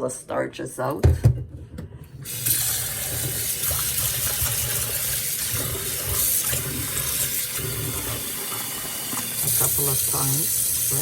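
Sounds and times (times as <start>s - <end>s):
tap water running into pot: 2.2s - 11.0s.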